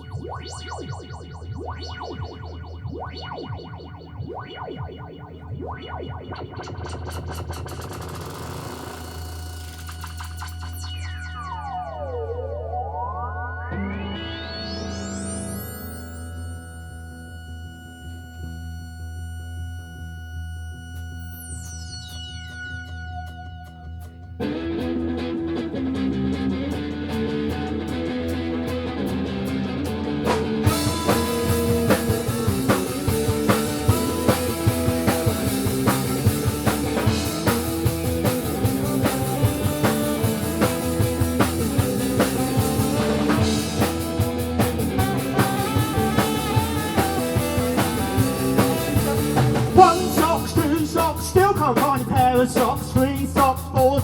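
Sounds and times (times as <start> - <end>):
synth drone: 0.0 - 51.3
ticking percussion: 20.9 - 53.9
bass and guitar riff: 24.4 - 54.0
drum kit with cymbal crashes: 30.3 - 54.0.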